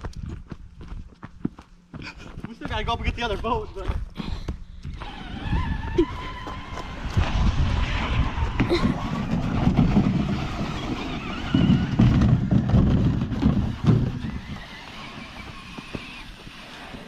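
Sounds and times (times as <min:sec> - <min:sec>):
rc truck motor whine: 0:04.8 - 0:07.4, 0:08.1 - 0:17.0
tyres rumbling over rough ground: 0:05.0 - 0:17.0.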